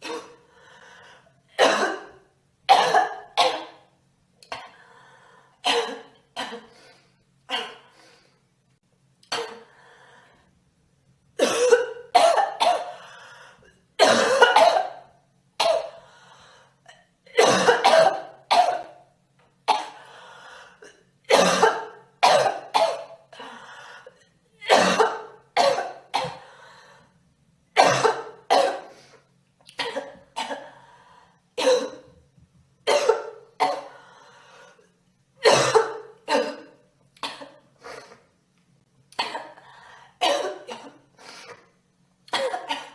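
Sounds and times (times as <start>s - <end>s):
girl coughing: 0.0s - 0.4s, 1.6s - 3.8s, 5.6s - 6.7s, 11.4s - 13.0s, 14.0s - 15.0s, 17.4s - 18.9s, 20.8s - 23.2s, 24.6s - 26.4s, 27.8s - 28.9s, 29.8s - 30.8s, 31.6s - 32.1s, 32.9s - 34.0s, 35.4s - 37.6s, 40.2s - 41.0s, 42.3s - 42.9s.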